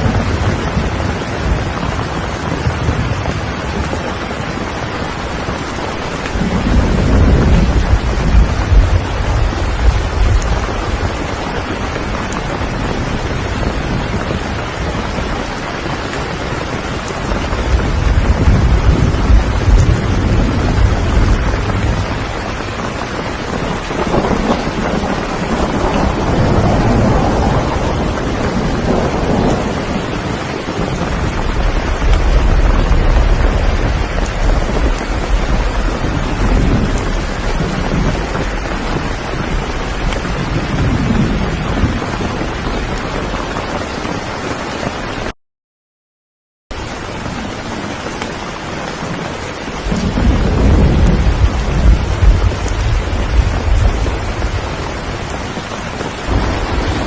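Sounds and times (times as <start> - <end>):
heavy rain: 0.0 - 45.4, 46.7 - 57.0
deep low rumble: 6.5 - 11.1, 17.6 - 22.3, 30.8 - 42.0.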